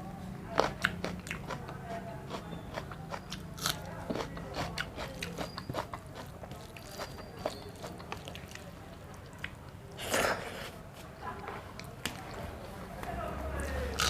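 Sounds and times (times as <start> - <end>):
person chewing food: 0.6 - 10.7.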